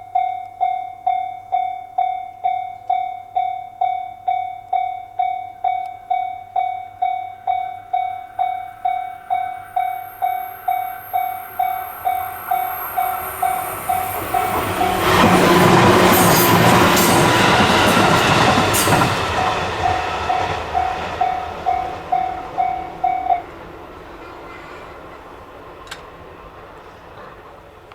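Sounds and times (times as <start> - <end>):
level crossing bell ringing: 4.9 - 17.5
train wheels on rails: 7.0 - 27.9.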